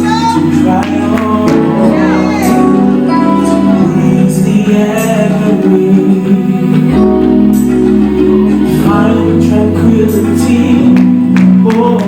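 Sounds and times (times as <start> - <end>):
bass line: 0.0 - 12.0
guitar: 0.0 - 12.0
live band instrumental: 0.0 - 12.0.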